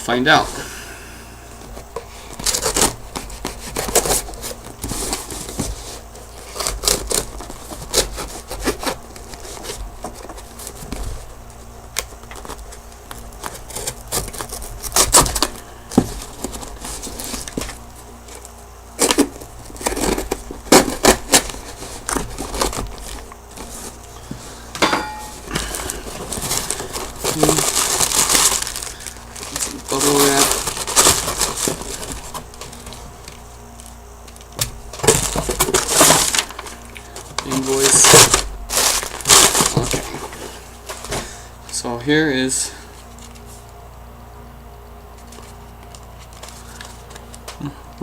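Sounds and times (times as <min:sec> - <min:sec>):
package tearing and crackling: 0:02.3 - 0:23.9, 0:25.4 - 0:41.2.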